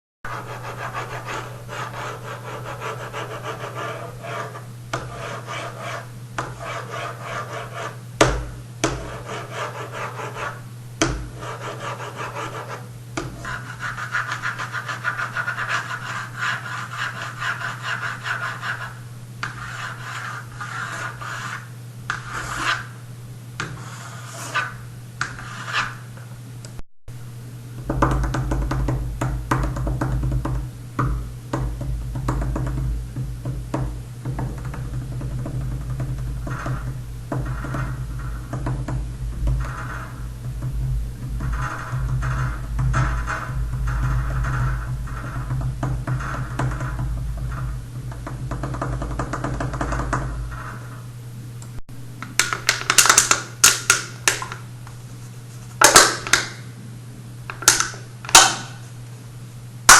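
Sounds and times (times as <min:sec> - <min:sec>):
rapid scratching strokes: 0:00.3 - 0:08.0, 0:09.0 - 0:10.6, 0:11.3 - 0:23.0, 0:23.6 - 0:26.0, 0:35.3 - 0:40.4, 0:41.2 - 0:51.0
steady low hum: 0:00.3 - 0:59.9
sharp knocks: 0:08.2 - 0:09.1, 0:11.0 - 0:11.4, 0:27.8 - 0:50.4.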